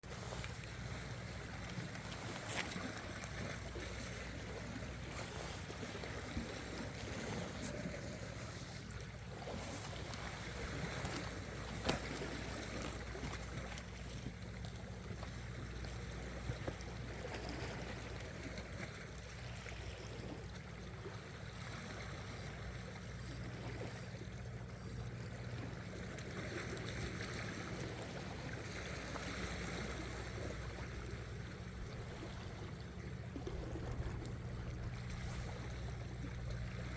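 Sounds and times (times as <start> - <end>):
sea water washing: 0.0 - 36.9
low hum: 12.8 - 28.7.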